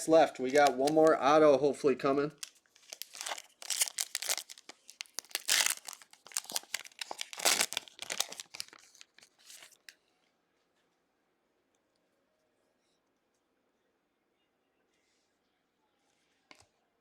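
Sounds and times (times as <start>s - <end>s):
foil wrapper crinkling: 0.4s - 1.2s, 2.3s - 10.0s.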